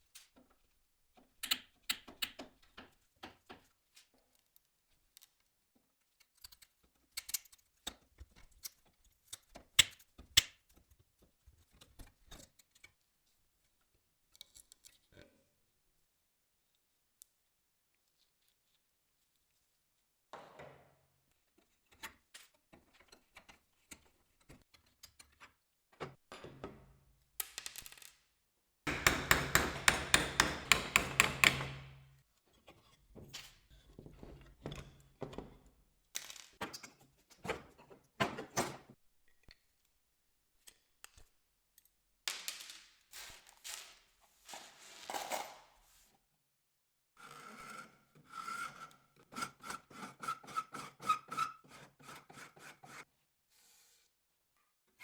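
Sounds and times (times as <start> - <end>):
knocks on wooden furniture: 28.9 - 32.1.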